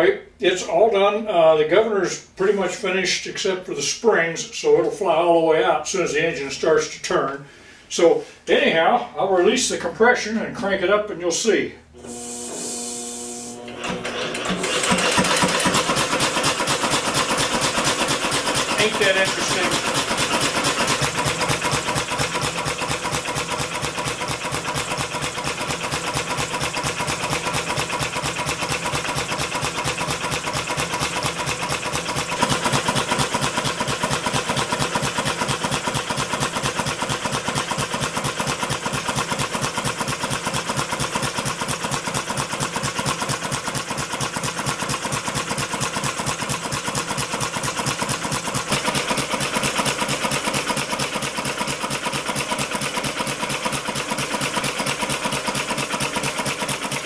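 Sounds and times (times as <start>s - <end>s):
small engine running with even beat: 14.6s - 57.0s.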